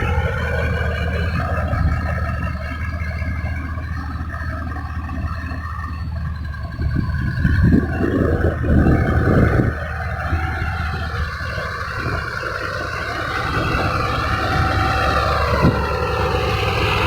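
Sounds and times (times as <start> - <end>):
low engine drone: 0.0 - 17.0.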